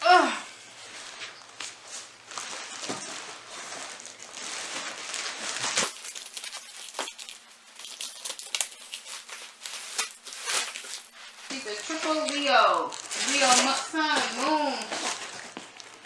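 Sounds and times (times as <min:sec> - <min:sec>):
material crinkling and rustling: 0:00.6 - 0:16.0.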